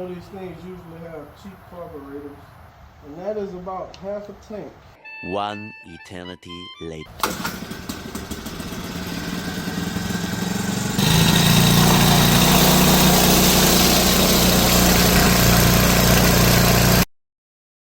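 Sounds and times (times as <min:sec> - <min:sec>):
outboard motor running: 0:07.1 - 0:17.0.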